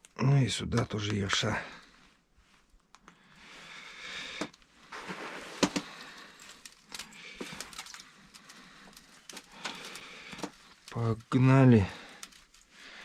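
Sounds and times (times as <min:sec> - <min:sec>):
hands rustling tackle: 0:04.4 - 0:13.0.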